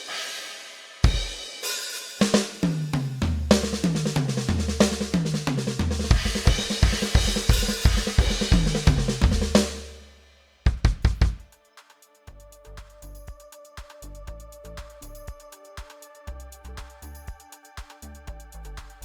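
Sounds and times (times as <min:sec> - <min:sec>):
crash cymbal ringing: 0:00.0 - 0:03.0, 0:06.1 - 0:10.6
drum kit groove: 0:00.0 - 0:19.0
quiet pitched music: 0:10.6 - 0:19.0.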